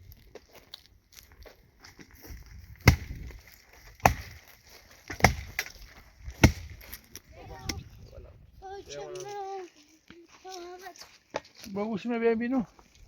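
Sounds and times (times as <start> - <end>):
axe chopping wood: 2.8 - 7.0.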